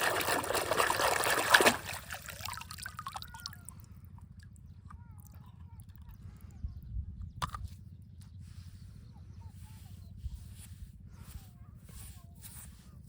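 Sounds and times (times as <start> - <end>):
water pouring and splashing: 0.0 - 3.6
water drips and trickles: 0.0 - 3.9.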